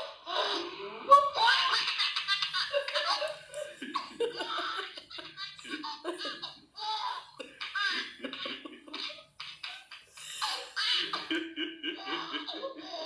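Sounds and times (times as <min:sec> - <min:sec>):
woman laughing: 0:07.4 - 0:13.0.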